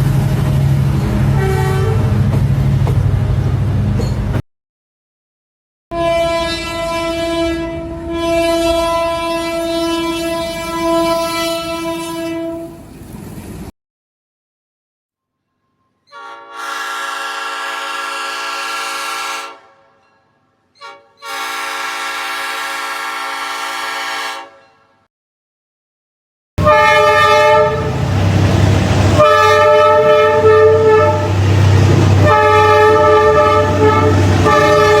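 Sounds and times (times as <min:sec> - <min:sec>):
train horn blast: 0:01.3 - 0:02.2, 0:05.9 - 0:12.8, 0:16.1 - 0:20.0, 0:20.8 - 0:24.6, 0:26.6 - 0:28.0, 0:29.1 - 0:31.5, 0:32.2 - 0:35.0.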